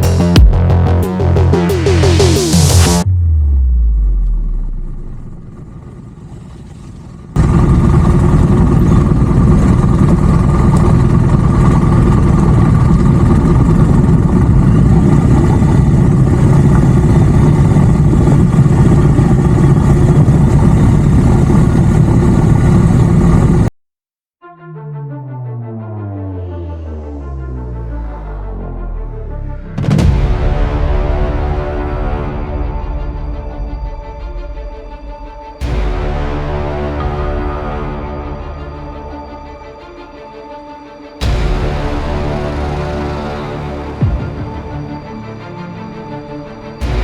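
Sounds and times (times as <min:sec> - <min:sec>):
electronic music: 0:00.0 - 0:05.3, 0:24.4 - 0:47.0
motorcycle engine running: 0:04.7 - 0:23.7
falling pitch sweep: 0:24.4 - 0:30.1.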